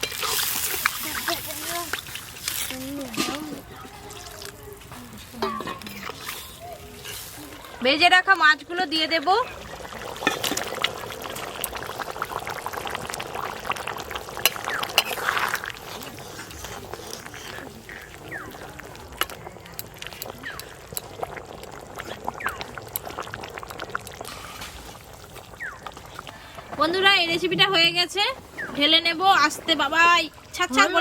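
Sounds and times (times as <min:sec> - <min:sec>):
liquid splashing: 0:00.0 - 0:07.9
curry bubbling in a pot: 0:00.0 - 0:31.0.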